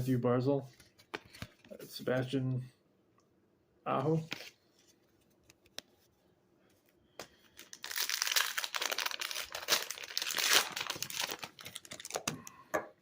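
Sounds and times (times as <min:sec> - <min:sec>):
plastic wrapper crinkling: 0:07.5 - 0:12.6.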